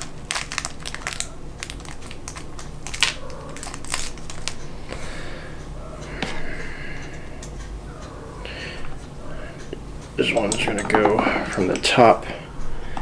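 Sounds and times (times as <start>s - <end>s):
small plastic parts clicking: 0.0s - 4.6s
plastic bag crinkling: 0.0s - 5.0s.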